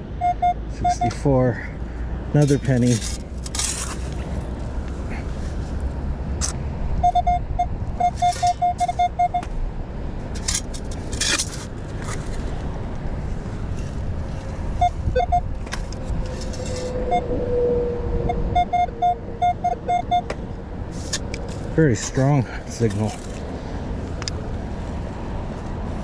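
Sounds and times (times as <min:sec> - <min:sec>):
metal detector beeps: 0:00.2 - 0:01.2, 0:07.0 - 0:09.5, 0:14.8 - 0:15.5, 0:18.5 - 0:20.3.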